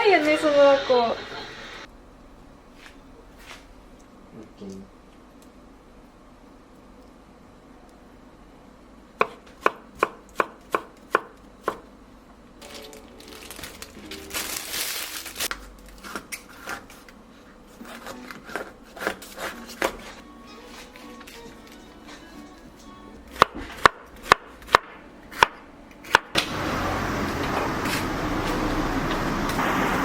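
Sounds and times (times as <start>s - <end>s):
hissing noise: 0.0s - 1.9s
knife chopping on cutting board: 9.2s - 11.8s, 17.8s - 20.1s, 23.3s - 26.3s.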